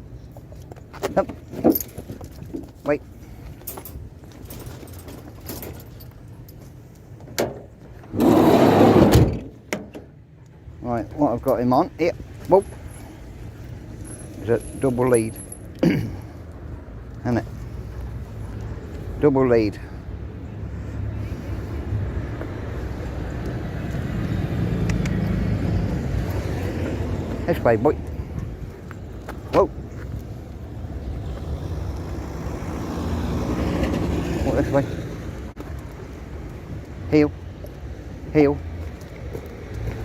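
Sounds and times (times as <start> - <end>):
street traffic rumbling: 0.0 - 40.0
metal jingling and clinking: 3.5 - 6.7, 14.0 - 15.8
vehicle door sliding shut: 7.4 - 10.0.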